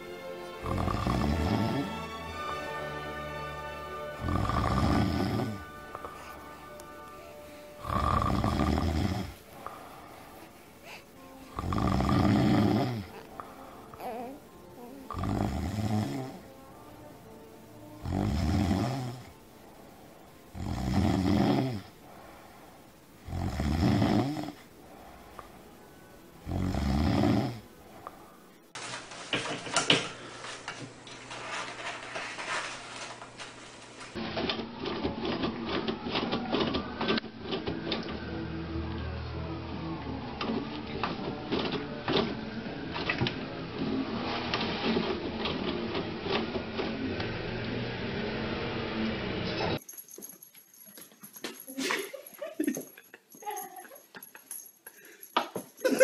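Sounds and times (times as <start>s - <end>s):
person snoring: 0.6s - 2.2s, 4.2s - 16.6s, 18.0s - 19.4s, 20.5s - 25.6s, 26.4s - 27.7s.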